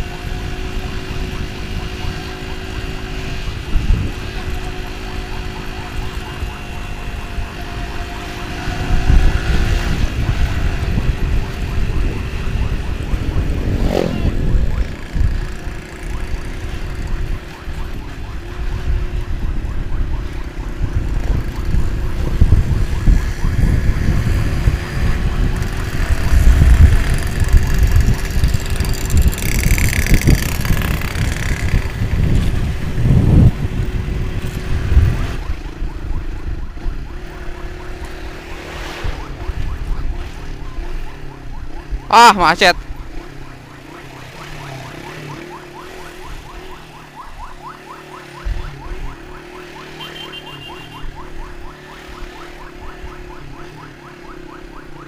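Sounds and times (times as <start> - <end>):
wind buffeting microphone: 0.0 - 42.1
motorcycle engine drone: 0.0 - 55.0.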